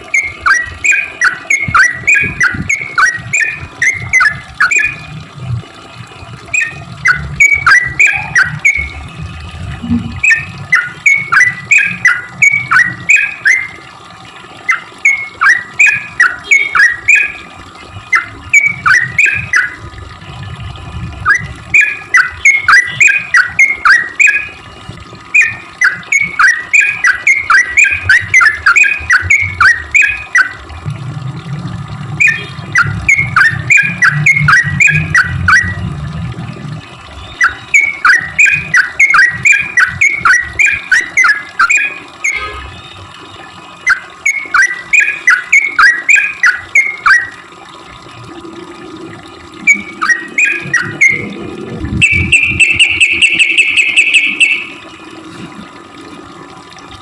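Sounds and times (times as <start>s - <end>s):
bulbul chattering call: 52.0s - 54.8s.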